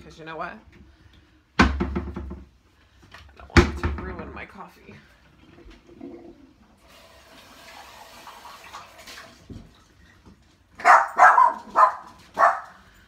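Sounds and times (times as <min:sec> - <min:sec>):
dog barking: 0:10.8 - 0:12.8.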